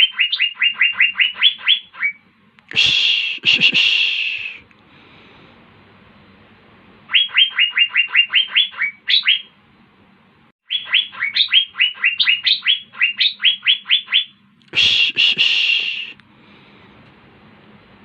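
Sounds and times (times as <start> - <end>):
bird whistling sharp notes: 0.0 - 2.2, 7.1 - 9.5, 10.7 - 16.2.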